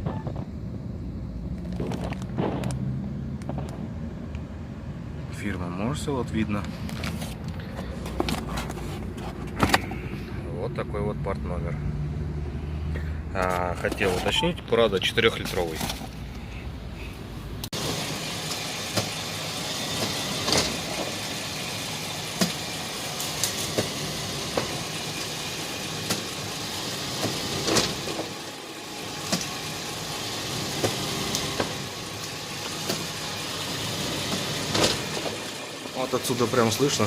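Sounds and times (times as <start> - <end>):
car engine idling: 13.0 - 37.0.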